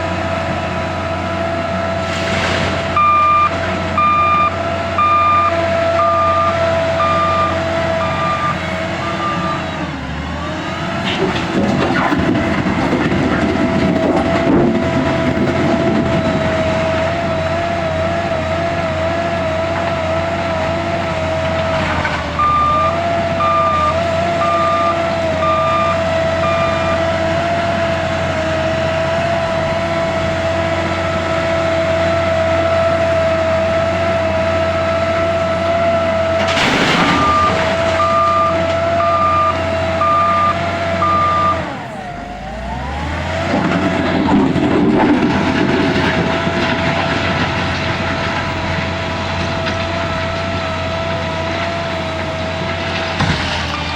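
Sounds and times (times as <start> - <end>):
diesel engine whining: 0.0 - 53.9
reversing alarm beeping: 2.9 - 10.0, 14.9 - 19.0, 22.2 - 28.0, 35.9 - 43.3.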